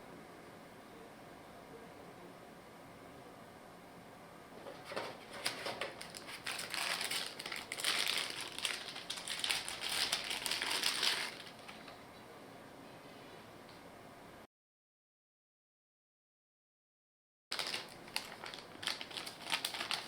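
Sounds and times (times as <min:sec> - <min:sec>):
packaging crinkling: 0:04.8 - 0:11.9, 0:17.5 - 0:20.0.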